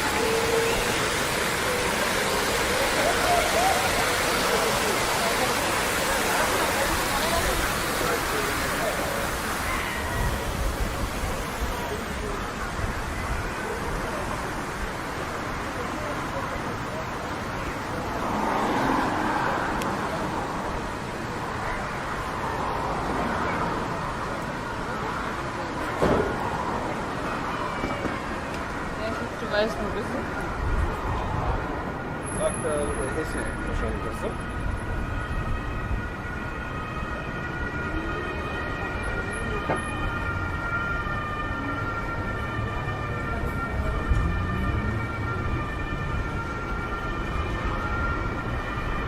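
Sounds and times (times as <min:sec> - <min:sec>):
street traffic hum: 0:00.0 - 0:49.0
vehicle passing: 0:17.8 - 0:24.3, 0:40.1 - 0:49.0.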